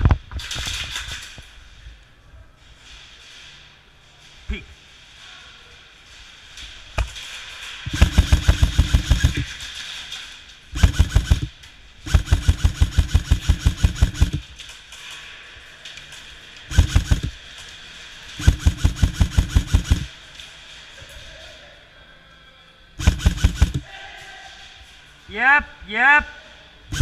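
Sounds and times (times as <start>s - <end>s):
airsoft rifle firing full auto: 7.9s - 9.6s, 10.8s - 14.5s, 16.7s - 17.4s, 18.4s - 20.1s, 23.0s - 23.9s.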